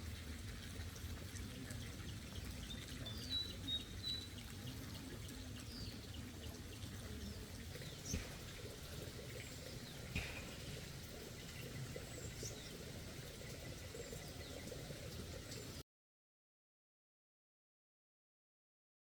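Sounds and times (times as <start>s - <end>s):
small birds chirping: 0.7s - 15.8s.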